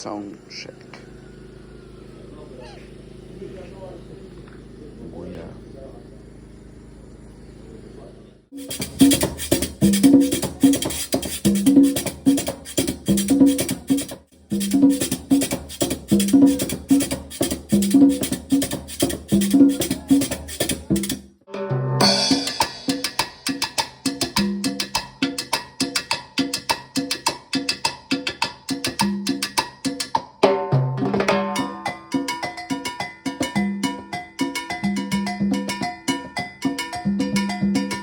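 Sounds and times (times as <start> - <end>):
drum kit groove: 8.5 - 38.0.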